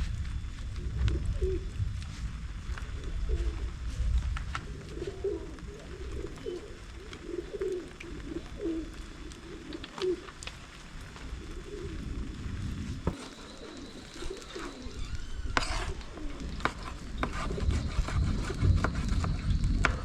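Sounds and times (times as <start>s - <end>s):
low rumble: 0.0s - 7.3s
doves cooing: 0.7s - 1.8s, 2.8s - 19.3s.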